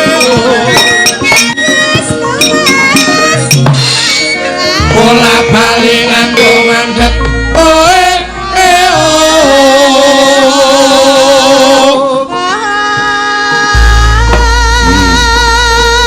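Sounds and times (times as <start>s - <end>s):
gamelan accompaniment: 0.0s - 9.6s
person singing with vibrato: 0.0s - 16.0s.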